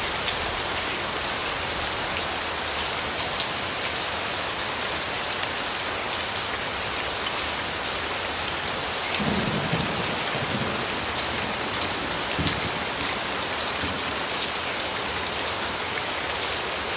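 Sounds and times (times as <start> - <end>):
rain pattering: 0.0 - 16.9
thunder rumbling: 9.2 - 14.3.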